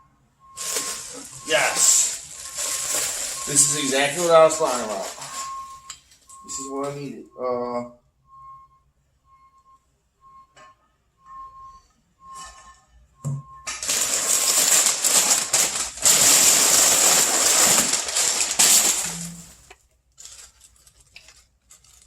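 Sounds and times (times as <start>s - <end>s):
packaging rustling and crinkling: 0.6s - 6.2s, 13.7s - 22.0s.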